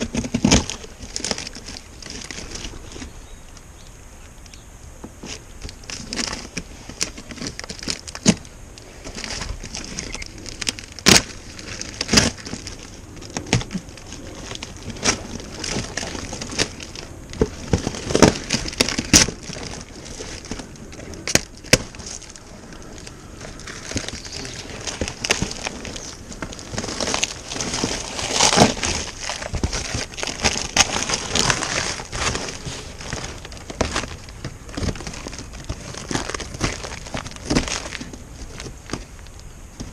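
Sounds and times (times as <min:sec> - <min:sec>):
packaging crinkling and crackling: 0:00.0 - 0:03.7, 0:05.2 - 0:39.9.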